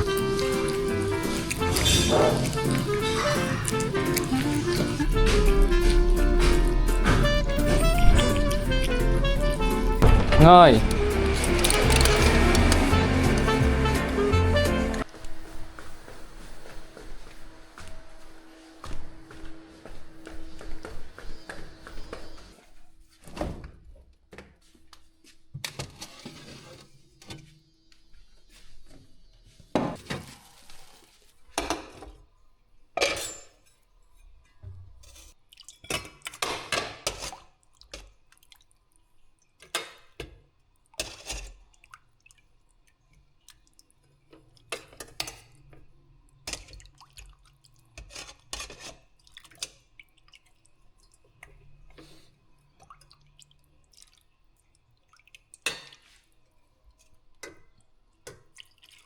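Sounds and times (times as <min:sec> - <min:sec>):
dishes and utensils clinking: 0:00.0 - 0:15.0
rustling or scraping: 0:00.0 - 0:20.6.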